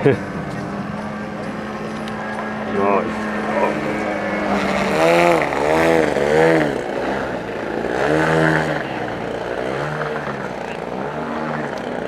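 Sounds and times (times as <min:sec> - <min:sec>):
model airplane engine: 0:00.0 - 0:12.0.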